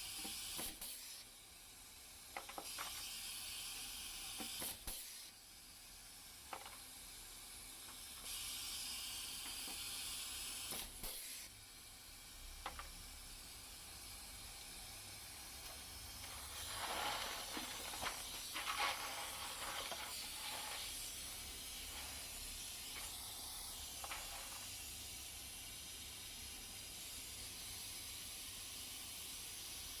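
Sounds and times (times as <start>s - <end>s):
air hissing: 8.1s - 11.5s, 13.3s - 26.5s
rustling: 16.2s - 21.0s.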